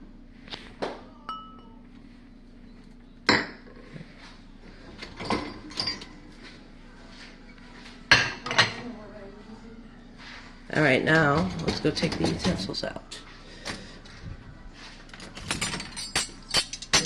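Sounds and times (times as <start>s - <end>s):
dishes clinking and knocking: 5.0s - 6.3s, 8.1s - 8.9s, 11.1s - 12.7s, 15.1s - 17.0s.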